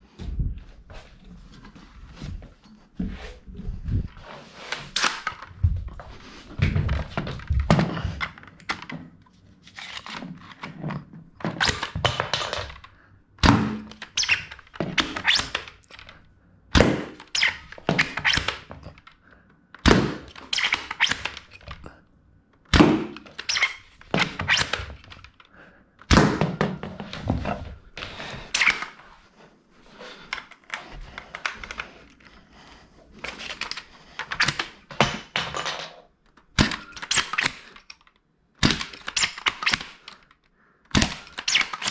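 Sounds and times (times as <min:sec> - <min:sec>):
plastic clicking and rattling: 0:06.5 - 0:26.2, 0:30.2 - 0:32.4, 0:33.2 - 0:41.9.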